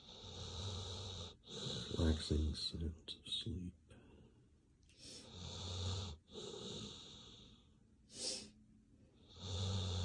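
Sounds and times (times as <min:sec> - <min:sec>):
dog snoring: 0:00.0 - 0:02.3, 0:05.2 - 0:08.4, 0:09.2 - 0:10.0
sharp puff of breath: 0:08.1 - 0:08.5.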